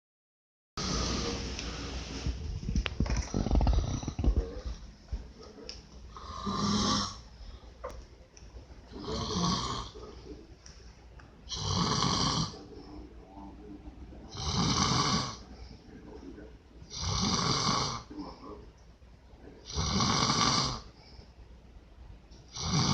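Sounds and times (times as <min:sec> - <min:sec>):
man snoring loudly: 0:00.8 - 0:01.4, 0:03.3 - 0:04.4, 0:06.2 - 0:07.2, 0:09.0 - 0:10.0, 0:11.5 - 0:12.6, 0:14.3 - 0:15.4, 0:16.9 - 0:18.1, 0:19.7 - 0:20.9, 0:22.5 - 0:22.9.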